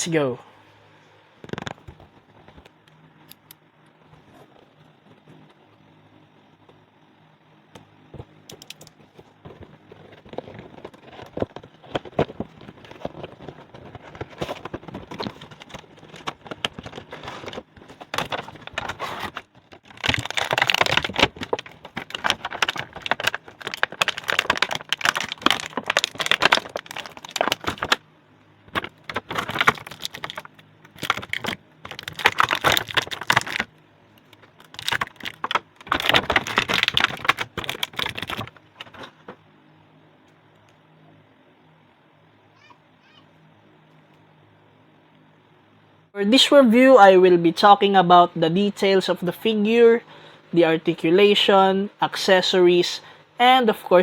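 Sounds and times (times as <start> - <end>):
plastic packaging crinkling: 8.6 - 28.0, 28.7 - 39.4.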